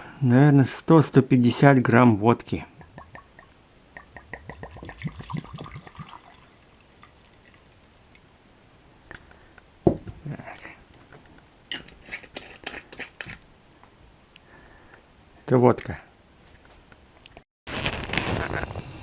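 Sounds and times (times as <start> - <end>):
liquid glugging from a bottle: 4.0 - 6.4
loud knock: 9.9 - 10.2.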